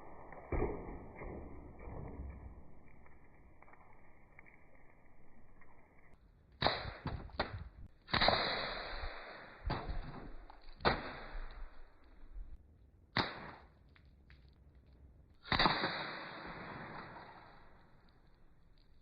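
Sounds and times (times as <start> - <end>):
toy pistol firing sharp snaps: 15.5 - 17.2.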